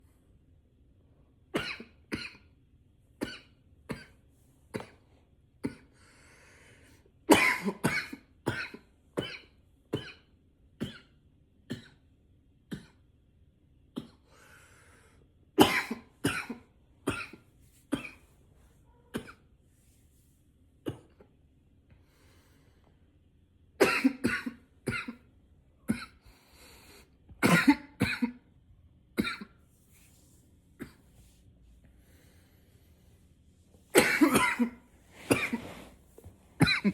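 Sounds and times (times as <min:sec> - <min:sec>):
man coughing: 0:07.3 - 0:09.4, 0:23.8 - 0:25.3, 0:27.4 - 0:28.4, 0:33.9 - 0:35.9, 0:36.6 - 0:36.9.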